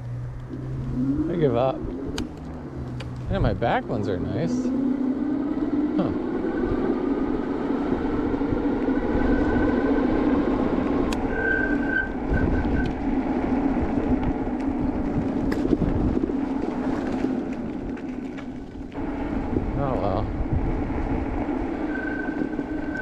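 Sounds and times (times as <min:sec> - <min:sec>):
low hum of riding: 0:00.0 - 0:23.0
wind rush: 0:00.8 - 0:23.0
high disc brake squeal: 0:11.2 - 0:12.9, 0:21.8 - 0:23.0.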